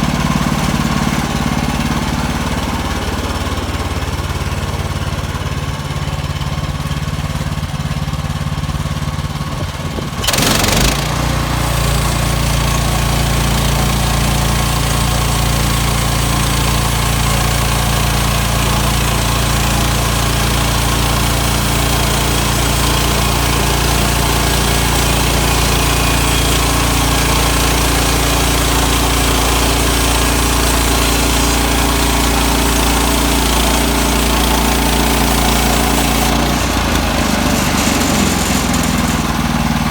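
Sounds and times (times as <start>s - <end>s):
small engine running: 0.0s - 39.9s.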